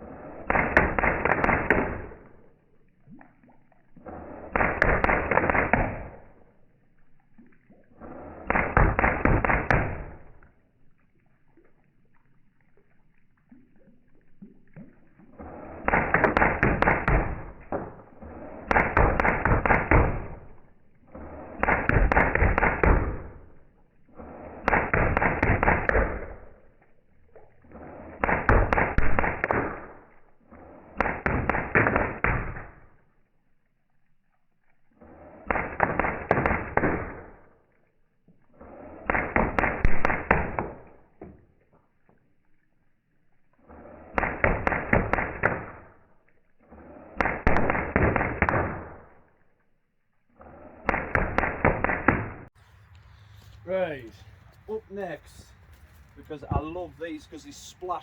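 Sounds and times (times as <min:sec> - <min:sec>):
airsoft gun firing bursts: 0:00.5 - 0:02.2, 0:04.5 - 0:06.2, 0:08.5 - 0:10.2, 0:15.8 - 0:17.6, 0:18.7 - 0:20.4, 0:21.6 - 0:23.3, 0:24.6 - 0:26.4, 0:28.2 - 0:30.0, 0:35.5 - 0:37.4, 0:39.1 - 0:40.8, 0:44.2 - 0:45.9, 0:47.2 - 0:49.1, 0:50.9 - 0:52.5.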